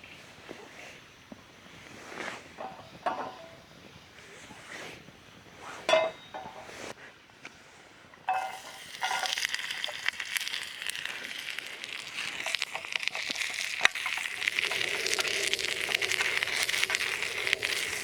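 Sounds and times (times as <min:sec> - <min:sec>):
light metallic clinks: 0:05.9 - 0:06.7, 0:08.3 - 0:09.5
campfire crackling and sizzling: 0:08.3 - 0:18.0.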